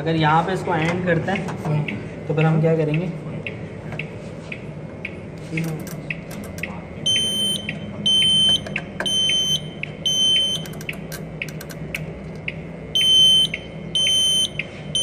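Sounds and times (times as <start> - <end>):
faint regular ticking: 0.7 - 7.8
fire alarm beeping: 7.0 - 10.9, 12.9 - 15.0.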